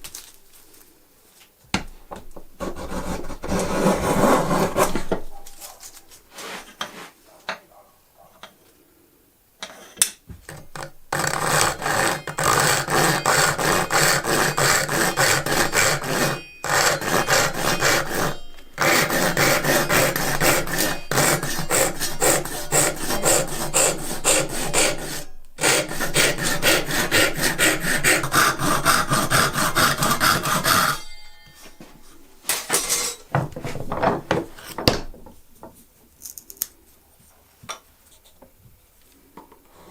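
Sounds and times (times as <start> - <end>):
hand tool working wood: 1.8 - 7.2, 10.5 - 32.0.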